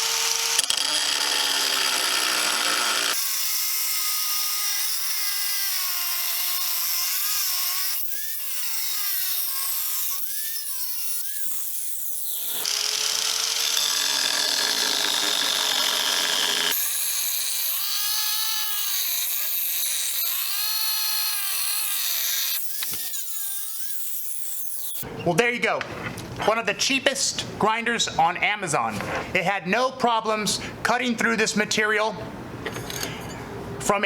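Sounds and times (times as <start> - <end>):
angle grinder cutting tile: 0.0 - 25.0.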